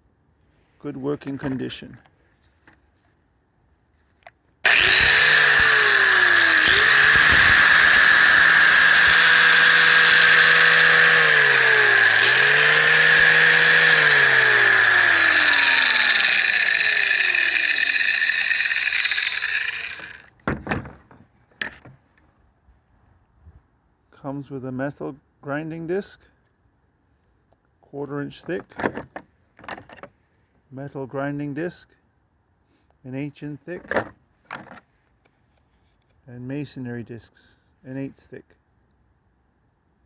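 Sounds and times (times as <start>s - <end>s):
angle grinder whining: 4.7s - 20.5s.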